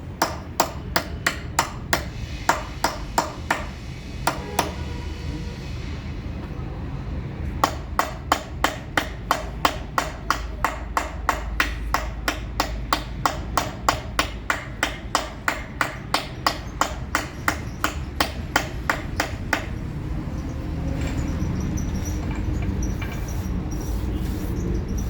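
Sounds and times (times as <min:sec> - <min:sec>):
hammer tapping chisel into stone: 0:00.2 - 0:03.7, 0:07.6 - 0:19.8.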